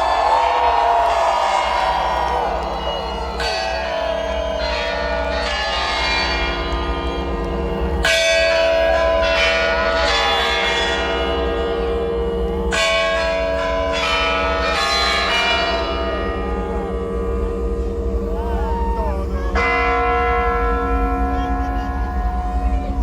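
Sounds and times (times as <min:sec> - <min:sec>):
large bells ringing: 0:00.0 - 0:23.0.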